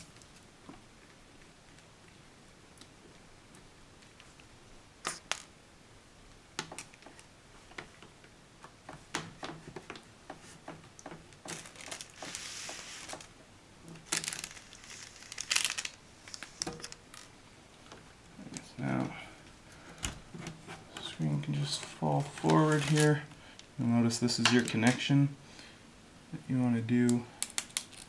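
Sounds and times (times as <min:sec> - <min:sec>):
crinkly rustling: 0:11.3 - 0:19.2, 0:19.8 - 0:23.3.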